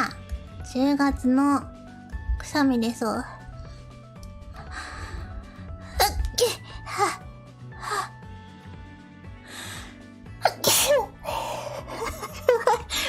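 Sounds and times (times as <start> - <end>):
woman sneezing: 10.4 - 11.1.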